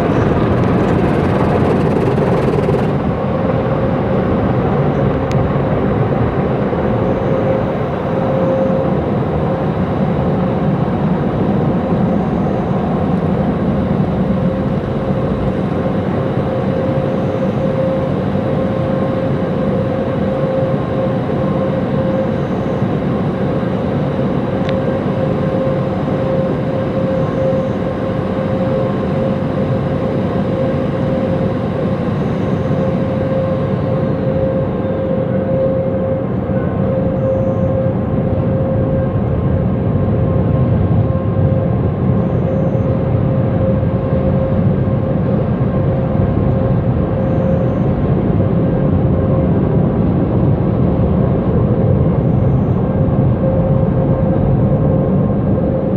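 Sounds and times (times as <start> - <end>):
car wash machinery running: 0.0 - 3.6.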